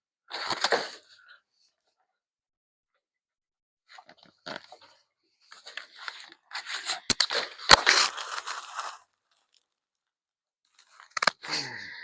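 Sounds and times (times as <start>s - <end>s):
packaging rustling and crackling: 5.6s - 9.6s.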